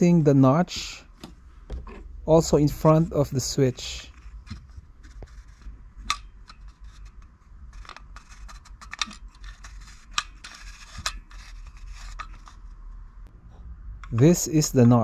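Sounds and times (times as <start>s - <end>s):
plastic toy parts rubbing: 0.0s - 13.0s
plastic clicks: 4.1s - 12.6s.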